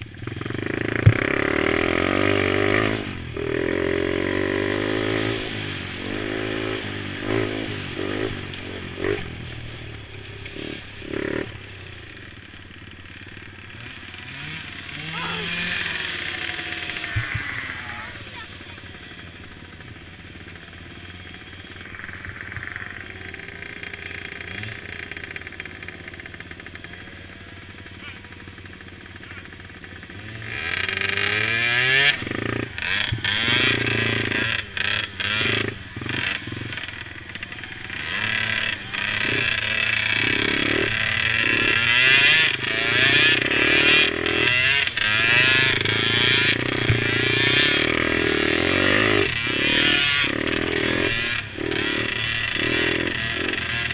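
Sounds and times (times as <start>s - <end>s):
quad engines revving: 0.0s - 53.9s.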